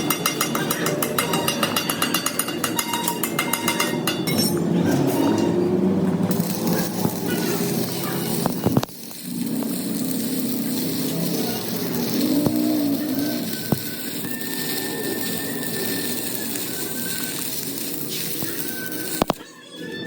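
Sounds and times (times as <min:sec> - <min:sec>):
workshop noise: 0:00.0 - 0:20.0
rapid metallic clinking: 0:06.3 - 0:19.4.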